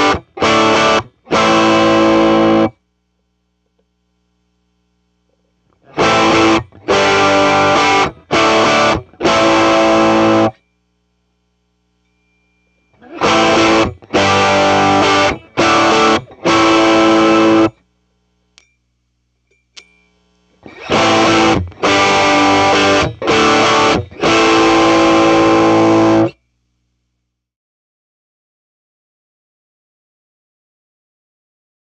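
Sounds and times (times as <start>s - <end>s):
electric guitar strummed chords: 0.0s - 2.8s, 5.8s - 10.6s, 13.0s - 17.8s, 20.6s - 26.4s.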